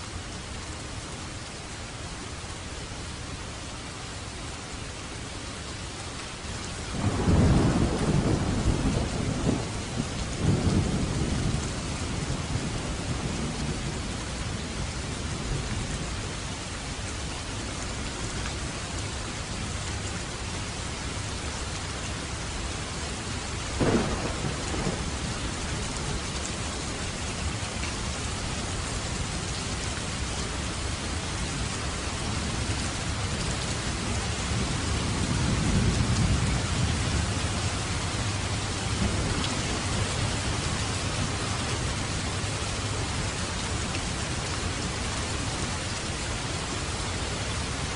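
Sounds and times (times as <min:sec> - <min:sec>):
heavy rain falling: 0:00.0 - 0:47.9
low rolling thunder rumble: 0:06.9 - 0:16.2, 0:22.8 - 0:43.1
sharp thunder crack: 0:23.8 - 0:25.1.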